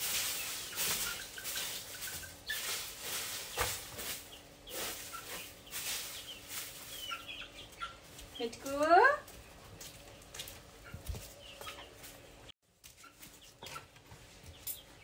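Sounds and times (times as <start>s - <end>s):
rustling scratching noise: 0.0s - 7.3s.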